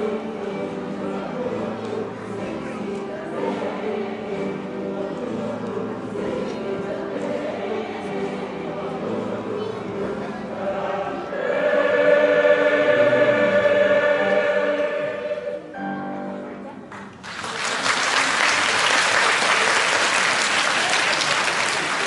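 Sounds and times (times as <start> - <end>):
choir holding a chord: 0.0 - 16.2
audience applause: 17.1 - 22.0.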